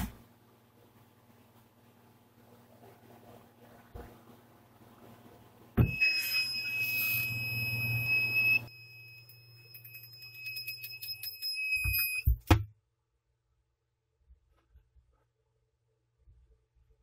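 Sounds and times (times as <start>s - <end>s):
high-pitched alarm buzzer: 5.8s - 12.3s.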